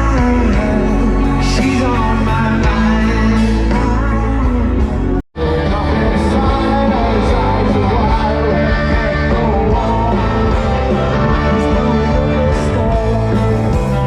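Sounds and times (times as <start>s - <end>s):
bass line: 0.0s - 14.0s
electric guitar: 0.0s - 14.0s
person singing: 0.0s - 14.0s.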